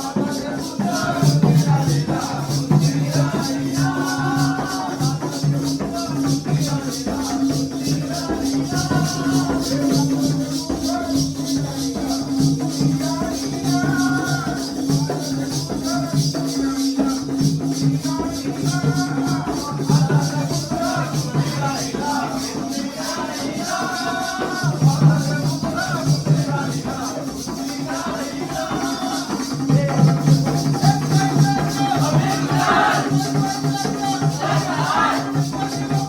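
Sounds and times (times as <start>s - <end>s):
fast jingling rhythm: 0.0s - 36.0s
pulsing drum beat: 0.0s - 36.0s
person singing folk melody: 18.2s - 36.0s.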